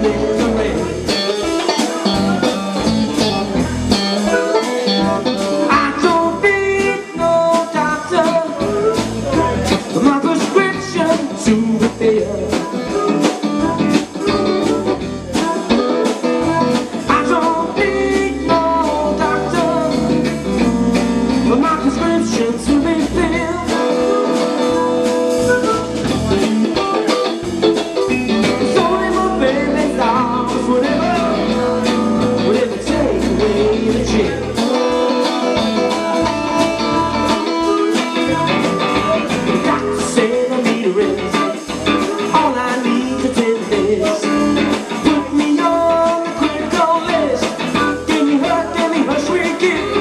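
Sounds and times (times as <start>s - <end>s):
electric guitar: 0.0s - 50.0s
live blues rock band: 0.0s - 50.0s.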